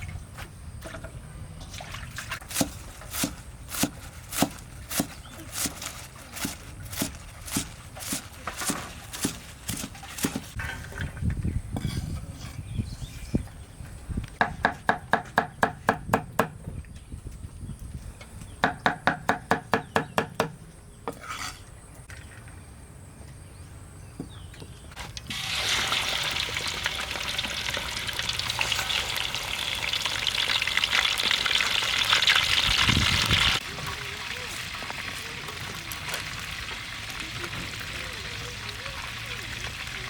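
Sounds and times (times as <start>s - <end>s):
food sizzling in hot oil: 25.2s - 38.0s.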